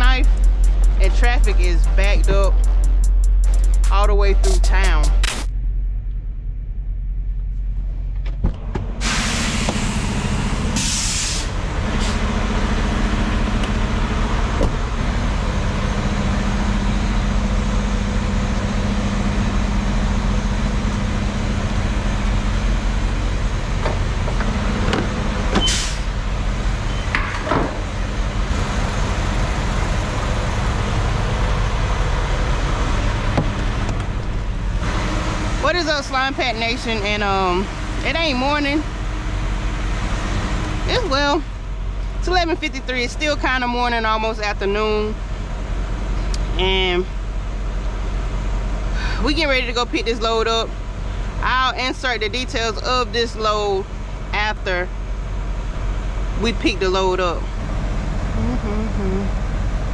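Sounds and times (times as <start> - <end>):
diesel truck engine running: 0.0 - 59.9
road and cab noise: 0.0 - 59.9
air brake hisses: 9.0 - 12.2.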